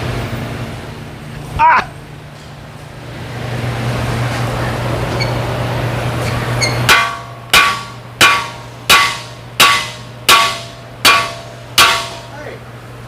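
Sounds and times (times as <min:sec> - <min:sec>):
hammer striking metal: 0:06.8 - 0:12.4.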